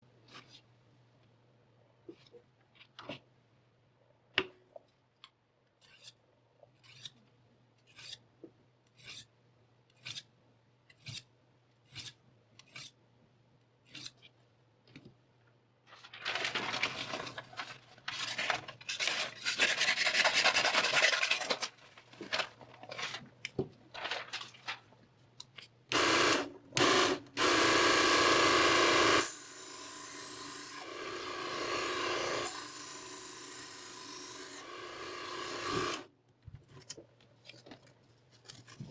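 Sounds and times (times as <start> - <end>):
knife scraping on grinder: 18.2 - 21.5
grinder rasping: 26.0 - 36.1.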